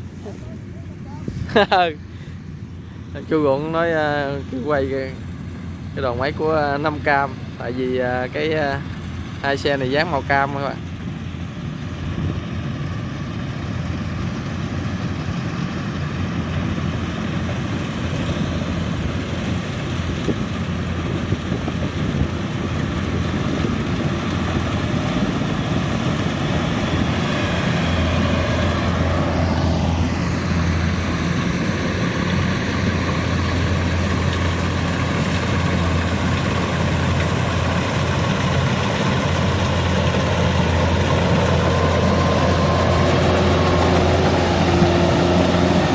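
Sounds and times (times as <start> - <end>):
combine harvester diesel engine: 0.0 - 45.9
falling whine: 22.5 - 45.9.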